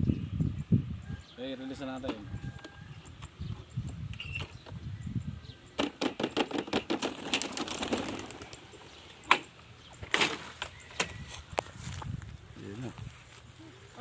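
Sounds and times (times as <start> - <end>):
pigeon wings flapping: 6.1 - 8.7.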